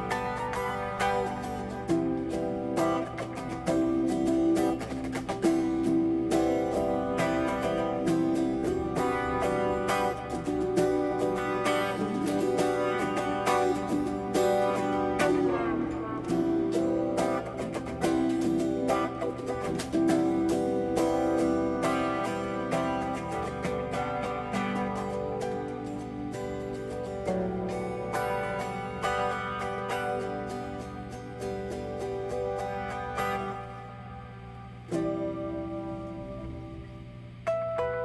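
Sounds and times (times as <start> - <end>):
plucked guitar music: 0.0 - 38.0.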